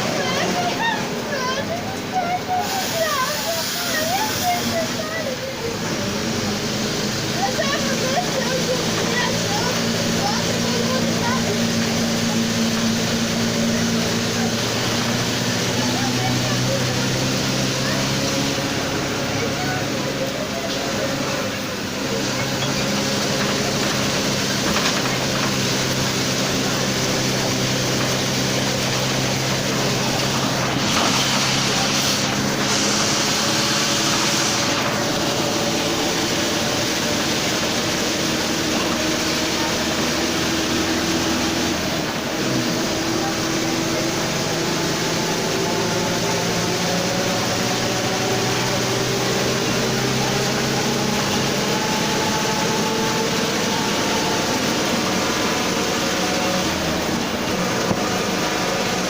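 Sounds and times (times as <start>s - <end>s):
bus diesel engine pulling away: 0.0s - 59.0s
driveshaft growl: 3.9s - 59.0s
air hissing: 26.8s - 36.4s.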